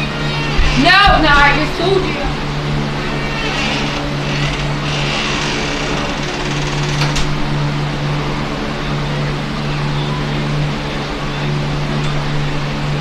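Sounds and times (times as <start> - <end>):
steady mechanical hum: 0.0 - 13.0.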